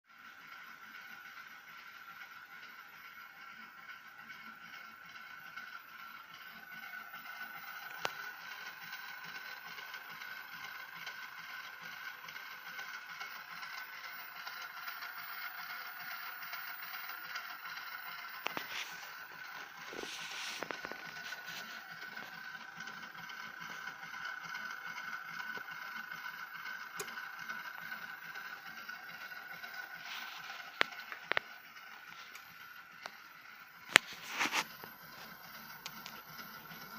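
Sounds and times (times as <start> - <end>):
machine hum with high tone: 0.1 - 36.9
scraping rustling noise: 19.8 - 21.9, 34.0 - 34.7.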